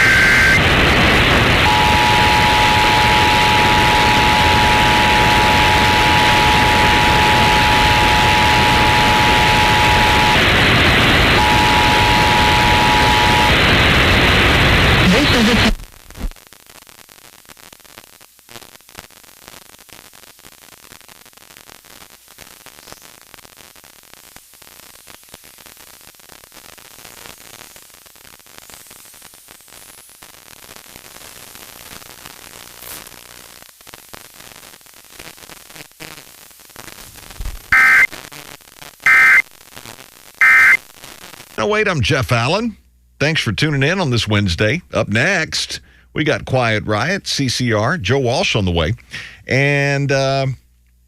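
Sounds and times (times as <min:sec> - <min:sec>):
shrill digital data tones: 0:00.0 - 0:00.7, 0:01.6 - 0:13.6, 0:37.7 - 0:38.1, 0:39.1 - 0:39.4, 0:40.4 - 0:40.8
radio static hiss: 0:00.0 - 0:50.6.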